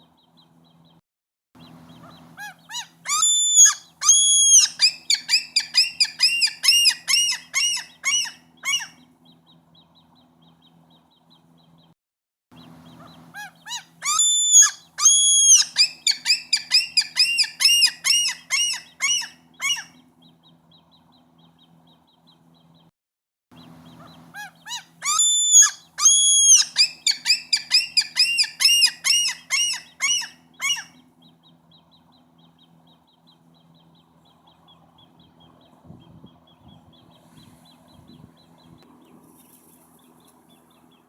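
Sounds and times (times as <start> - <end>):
gull calling: 2.4 - 9.0, 24.4 - 31.0.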